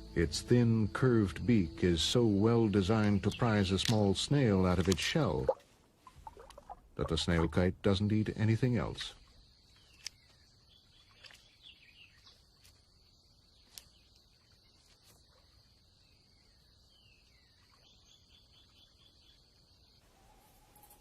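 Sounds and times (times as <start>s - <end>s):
high insect drone: 20.1s - 21.0s.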